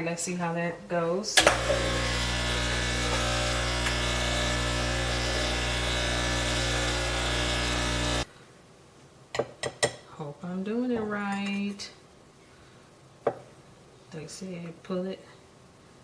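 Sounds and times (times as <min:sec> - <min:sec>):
espresso machine humming: 0:01.4 - 0:08.3.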